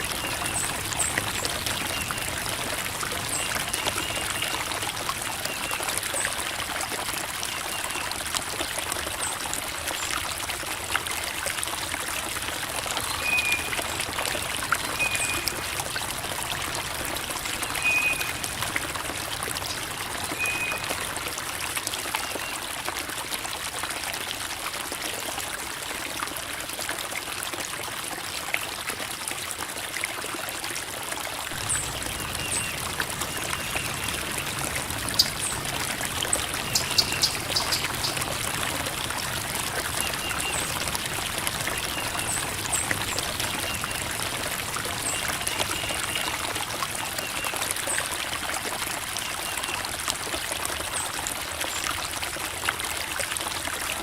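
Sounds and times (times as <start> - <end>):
creek water babbling over rocks: 0.0 - 54.0.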